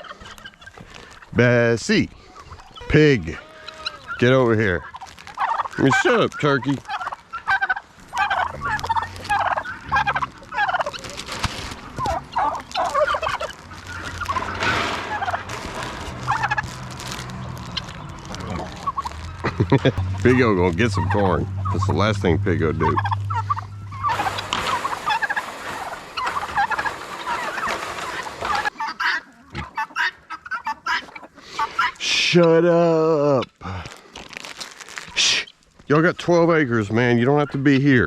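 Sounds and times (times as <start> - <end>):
turkey gobbling: 0.0 - 1.3, 2.2 - 32.0.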